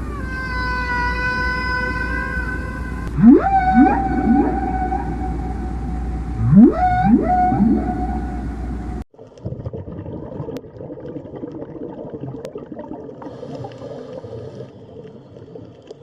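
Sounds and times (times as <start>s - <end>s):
whale call: 0.0s - 9.0s
gurgling underwater noise: 1.4s - 16.0s.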